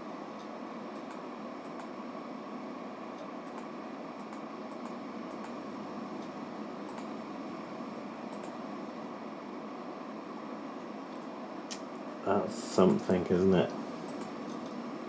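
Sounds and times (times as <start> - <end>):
computer cooling fans whirring: 0.0 - 15.0
faint clicks: 8.3 - 8.6.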